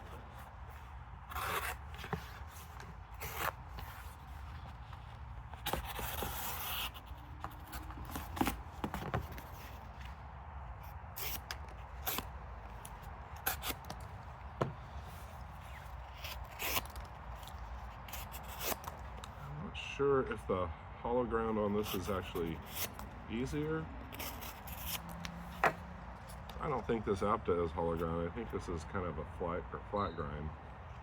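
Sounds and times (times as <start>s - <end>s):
knife slicing through cardboard: 1.2s - 4.8s, 5.5s - 9.8s, 11.2s - 19.1s, 21.7s - 25.8s.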